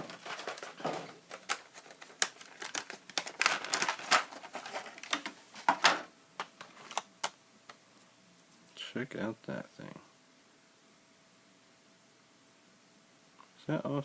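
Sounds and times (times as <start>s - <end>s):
plastic rustling: 0.0s - 7.1s.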